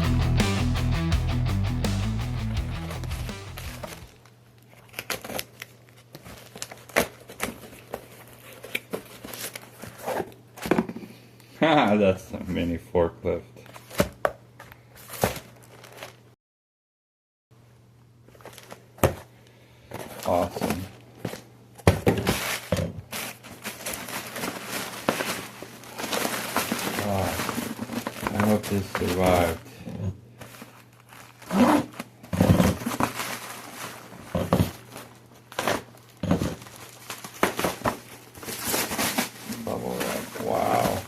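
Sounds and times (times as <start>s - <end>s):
packaging crinkling and tearing: 2.9s - 10.4s, 15.0s - 16.3s, 18.3s - 18.9s, 22.1s - 29.6s, 30.4s - 41.0s.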